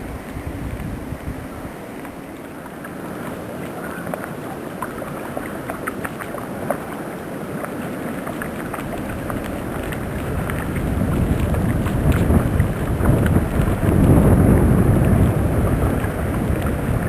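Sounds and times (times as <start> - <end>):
storm wind blowing: 0.0 - 1.9, 8.9 - 17.0.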